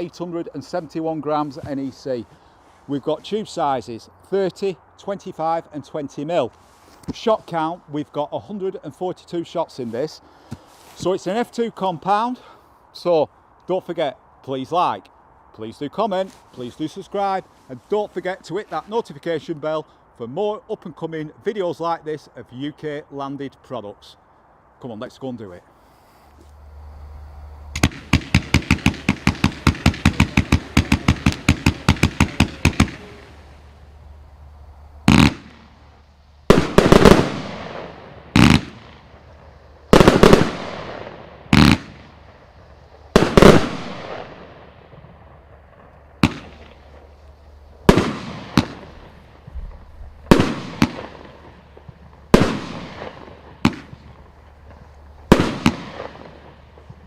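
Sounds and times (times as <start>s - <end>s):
firework reports with burst tails: 25.7s - 57.0s
firework cake firing: 27.8s - 34.2s, 35.0s - 47.2s, 47.8s - 57.0s.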